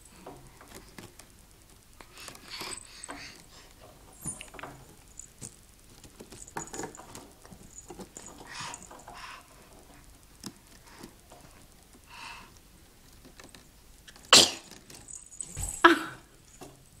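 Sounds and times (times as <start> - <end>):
baby sneezing: 14.3 - 14.7.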